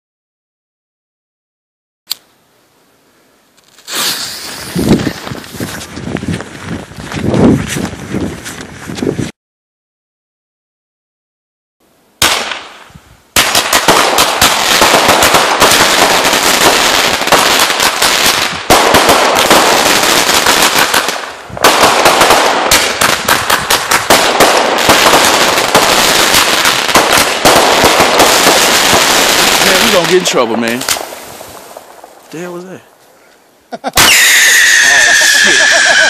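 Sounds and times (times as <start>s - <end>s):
firework bang: 3.8s - 5.4s, 18.6s - 32.2s
rapid firecracker cracks: 12.2s - 12.8s, 13.4s - 32.4s.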